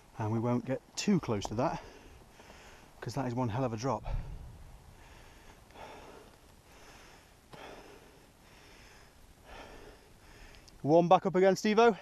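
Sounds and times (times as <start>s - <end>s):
person breathing hard: 1.8s - 3.0s, 4.0s - 10.8s.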